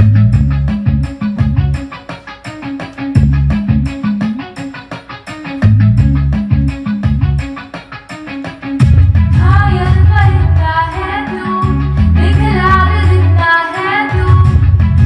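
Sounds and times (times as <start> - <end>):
instrumental music with heavy bass: 0.0 - 15.0
girl singing: 9.4 - 14.8.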